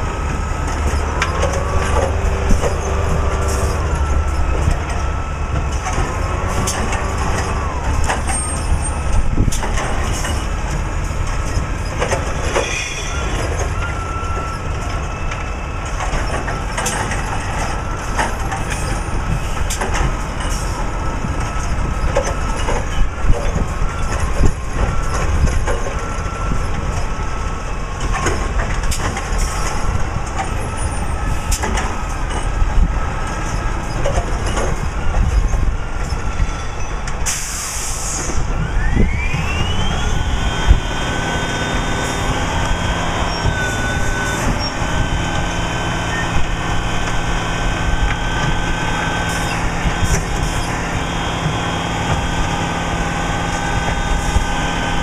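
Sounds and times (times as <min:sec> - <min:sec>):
truck engine rumbling: 0:00.0 - 0:55.0.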